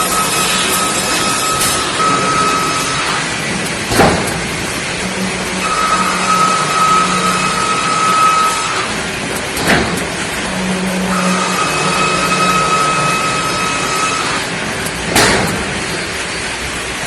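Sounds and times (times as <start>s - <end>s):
woodworking machinery running: 0.0s - 17.0s.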